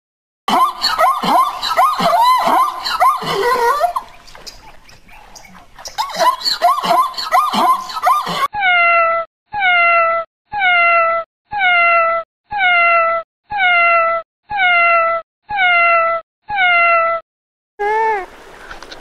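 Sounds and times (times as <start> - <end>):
cat meowing: 8.6 - 17.2.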